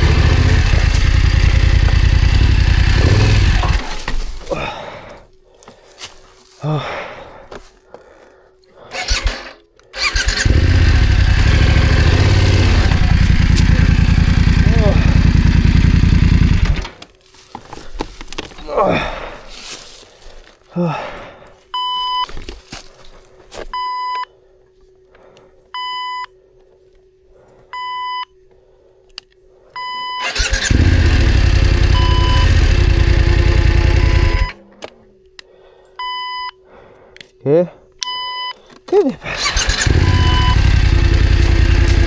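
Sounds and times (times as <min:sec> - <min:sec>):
motorcycle engine running: 0:00.0 - 0:04.1, 0:09.0 - 0:17.0, 0:30.2 - 0:34.6, 0:39.3 - 0:42.0.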